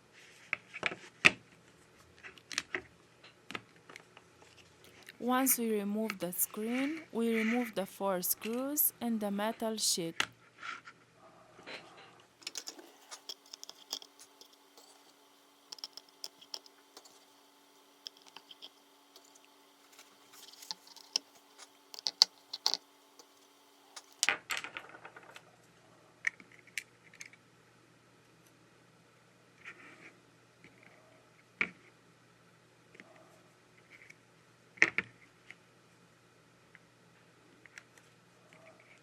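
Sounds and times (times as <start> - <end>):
faint steady hum: 0.0 - 39.0
small tools clicking on metal: 12.4 - 17.3, 21.9 - 23.4.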